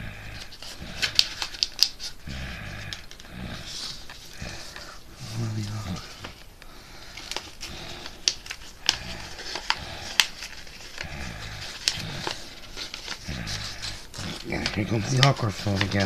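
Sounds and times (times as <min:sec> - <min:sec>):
paper crinkling: 0:00.3 - 0:16.0.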